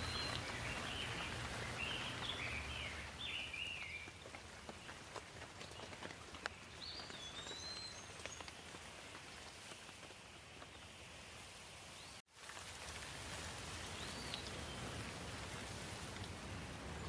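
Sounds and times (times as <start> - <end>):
bird chirping: 0.0 - 4.1, 6.4 - 8.5
raindrop ticks: 0.0 - 10.7
light rain: 0.0 - 17.0.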